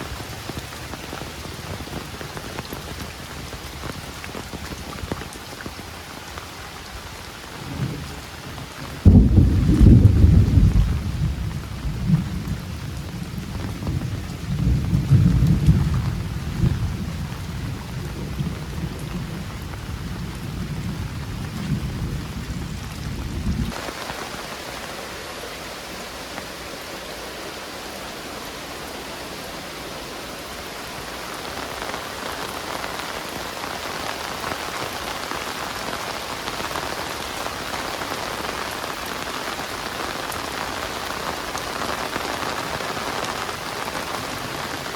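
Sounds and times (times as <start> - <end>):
heavy rain: 0.0 - 44.9
rolling thunder: 9.0 - 23.9.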